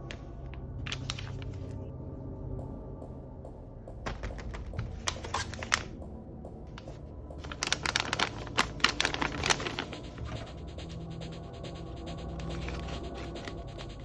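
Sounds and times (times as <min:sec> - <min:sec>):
background music: 0:00.0 - 0:14.0
paper crinkling and rustling: 0:00.8 - 0:01.8, 0:04.8 - 0:05.9, 0:06.8 - 0:10.4.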